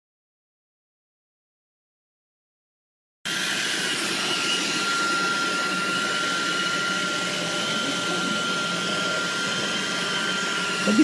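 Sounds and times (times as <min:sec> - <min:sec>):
motor-driven appliance running: 0:03.3 - 0:11.0
thin high whine: 0:04.1 - 0:11.0.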